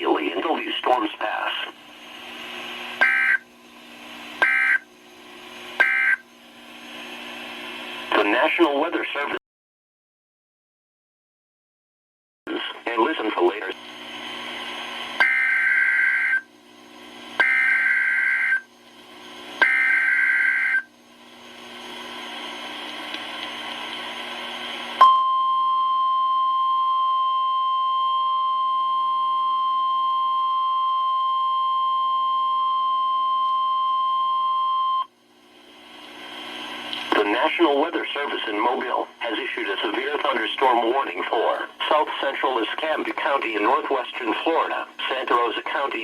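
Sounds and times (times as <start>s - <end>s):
radio hiss: 0.0s - 3.1s, 6.7s - 9.4s, 12.5s - 15.2s, 35.7s - 46.0s
steady warning alarm tone: 3.0s - 3.5s, 4.4s - 4.9s, 5.8s - 6.3s, 15.2s - 16.5s, 17.4s - 18.7s, 19.6s - 20.9s.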